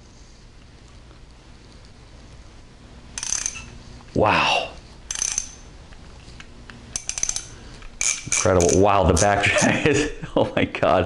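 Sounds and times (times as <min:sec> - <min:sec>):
ratchet wrench clicking: 0:03.2 - 0:03.7, 0:05.1 - 0:05.7, 0:06.9 - 0:09.5.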